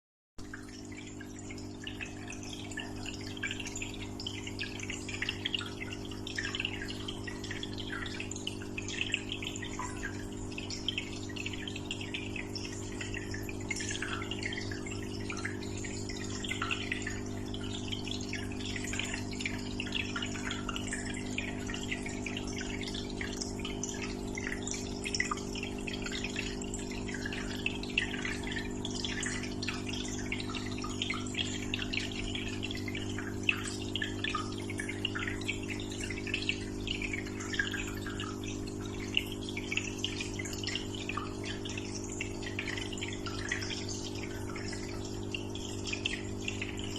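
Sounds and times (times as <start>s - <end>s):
water trickling and splashing: 0.4s - 46.9s.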